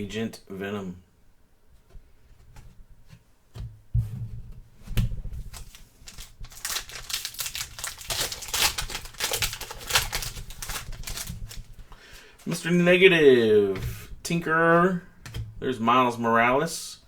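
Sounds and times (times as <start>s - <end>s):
foil wrapper crinkling: 5.5s - 12.3s.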